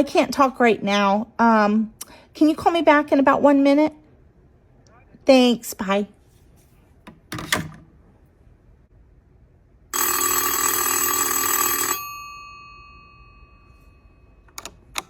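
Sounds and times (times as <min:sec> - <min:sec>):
telephone bell ringing: 0:09.9 - 0:14.5.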